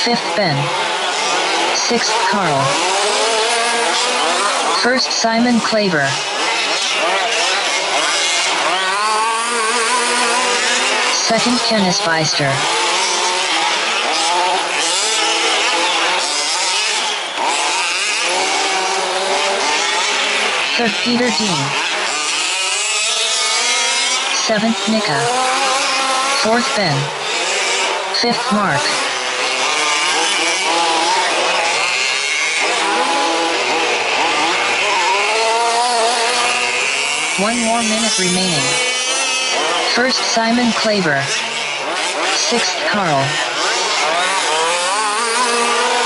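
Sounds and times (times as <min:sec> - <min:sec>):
small two-stroke engines revving: 0:00.0 - 0:46.0.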